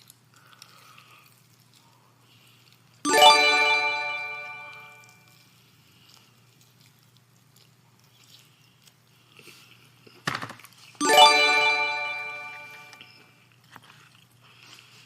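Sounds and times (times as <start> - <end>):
stream alert chime: 3.1 - 5.1, 11.0 - 13.1.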